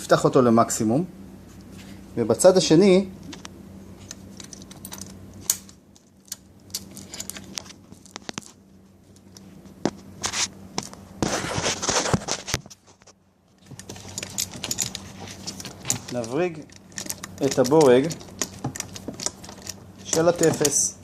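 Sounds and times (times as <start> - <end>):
metal seat clamp clicks and scrapes: 3.3 - 8.5, 13.5 - 20.9.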